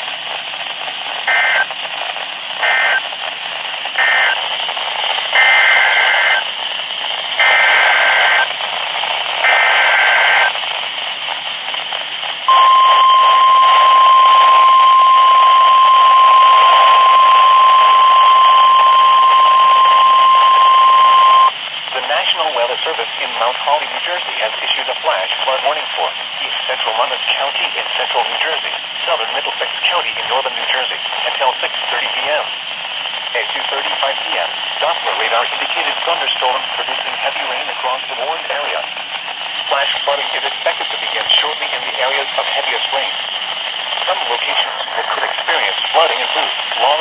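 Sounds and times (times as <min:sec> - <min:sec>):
radio hiss: 0:00.0 - 0:47.0
steady warning alarm tone: 0:12.5 - 0:21.5
two-tone warbling data bursts: 0:12.5 - 0:21.5.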